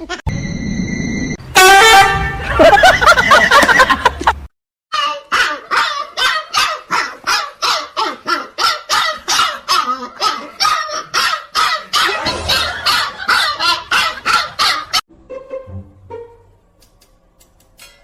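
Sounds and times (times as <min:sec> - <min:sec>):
dog barking rapidly: 0:05.3 - 0:15.0.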